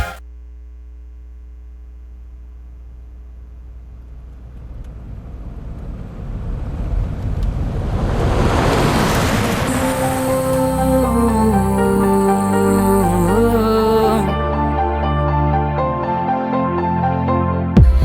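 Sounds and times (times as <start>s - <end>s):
low steady rumble: 0.0s - 14.5s
rush of noise: 5.1s - 13.2s
faint held drone: 9.6s - 17.0s.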